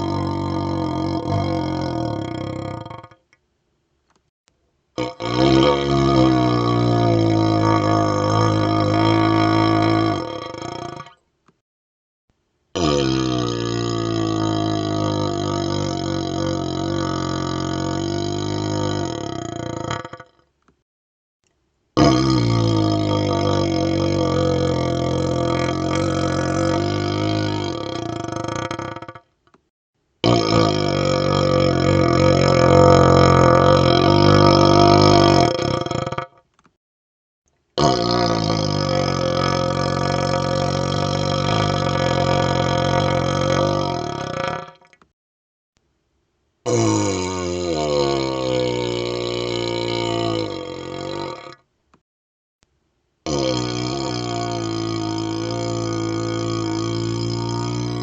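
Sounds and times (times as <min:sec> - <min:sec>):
burp blown through tube: 0:00.0 - 0:03.3, 0:05.0 - 0:11.3, 0:12.8 - 0:20.5, 0:22.0 - 0:36.5, 0:37.8 - 0:45.1, 0:46.6 - 0:51.7, 0:53.3 - 0:58.0.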